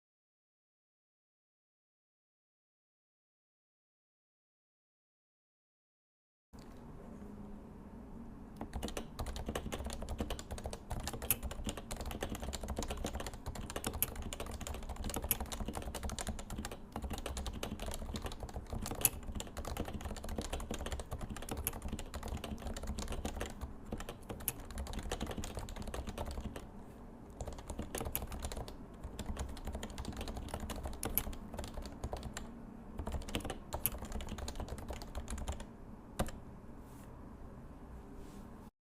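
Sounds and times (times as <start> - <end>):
fast typing on keyboard: 8.6 - 26.7, 27.4 - 36.4.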